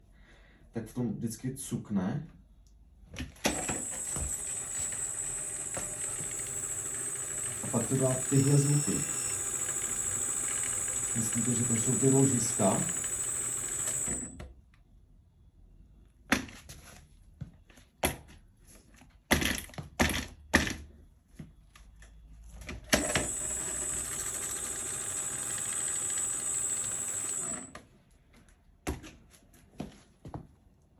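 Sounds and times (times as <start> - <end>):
hub motor whining roughly: 3.5 - 14.4, 23.0 - 27.8.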